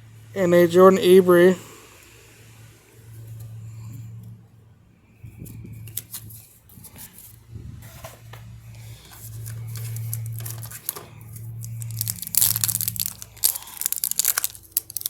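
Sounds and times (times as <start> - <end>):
steady low hum: 0.0 - 15.0
card pack wrapper crinkling: 9.2 - 15.0.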